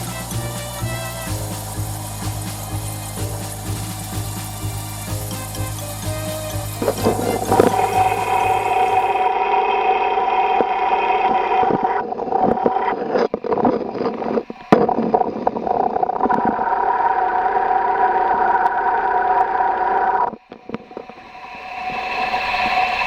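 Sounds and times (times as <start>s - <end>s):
probe scraping and clicking: 0.0s - 9.3s, 10.5s - 16.8s.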